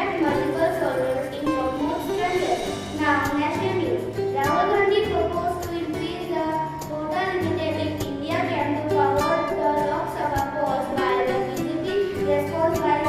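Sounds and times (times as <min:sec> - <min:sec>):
instrumental accompaniment with beat: 0:00.0 - 0:07.2.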